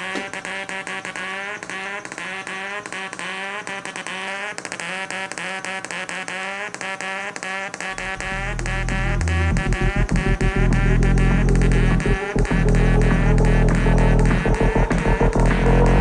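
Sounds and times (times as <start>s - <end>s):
rapid clicks: 7.7s - 16.0s
buzzy warbling electronic tone: 7.9s - 16.0s.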